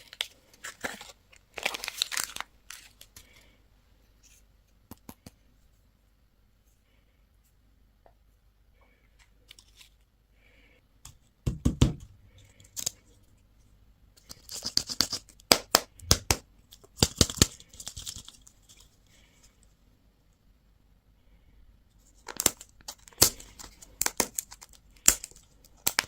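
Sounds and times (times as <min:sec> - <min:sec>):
plastic packaging crinkling and tearing: 0:00.0 - 0:03.4, 0:22.2 - 0:26.0.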